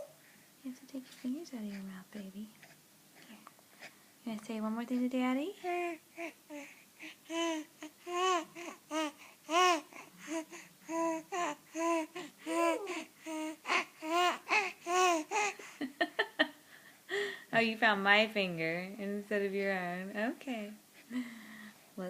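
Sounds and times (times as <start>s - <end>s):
baby cooing and babbling: 5.6s - 15.7s.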